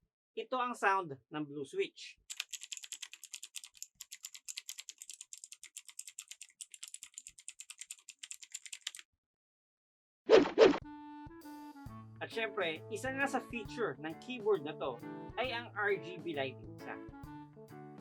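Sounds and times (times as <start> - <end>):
fast typing on mechanical keyboard: 2.3 - 9.0.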